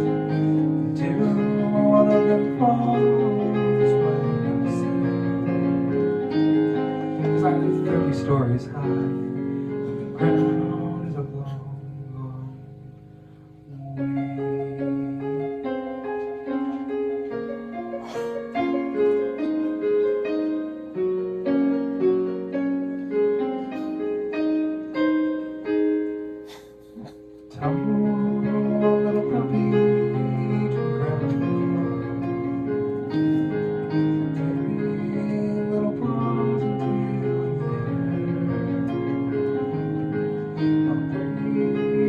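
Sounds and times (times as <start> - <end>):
piano music: 0.0 - 42.0.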